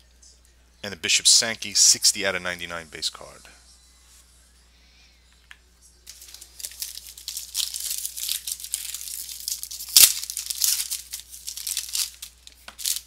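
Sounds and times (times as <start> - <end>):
plastic wrapper crinkling and tearing: 6.1 - 13.0.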